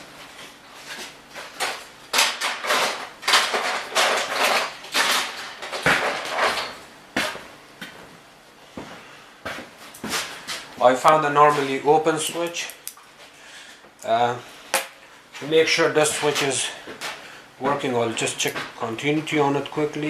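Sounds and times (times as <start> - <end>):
small hard parts clattering: 1.4 - 6.8.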